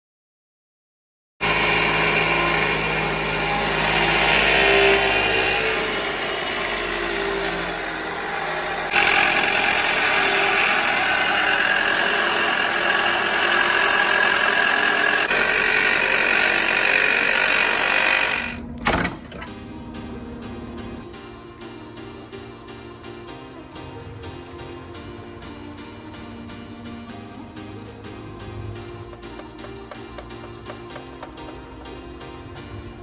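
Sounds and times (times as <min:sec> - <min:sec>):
alternator whine: 0:18.5 - 0:21.1.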